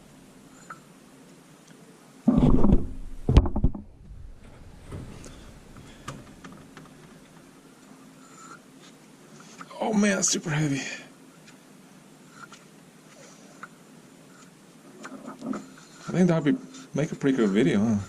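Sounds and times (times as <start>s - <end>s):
sharp knocks: 2.3s - 5.3s.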